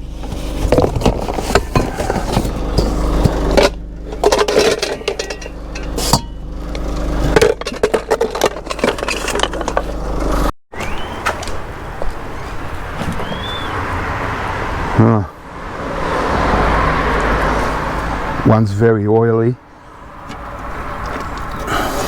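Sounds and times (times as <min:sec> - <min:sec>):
steady street noise: 0:00.0 - 0:22.0
metal and plastic scrap clinking: 0:00.2 - 0:10.5.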